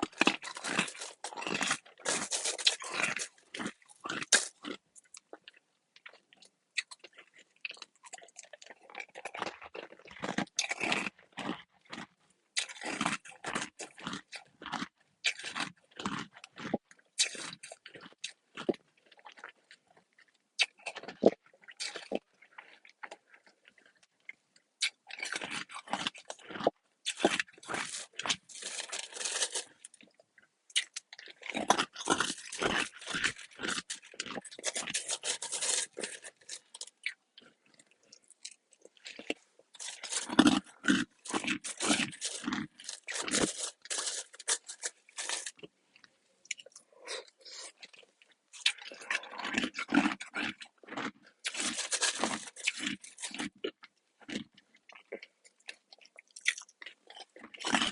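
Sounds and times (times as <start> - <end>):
person crunching ice: 0.0 - 5.6, 6.8 - 18.7, 24.8 - 30.1, 30.8 - 45.7, 48.6 - 55.8.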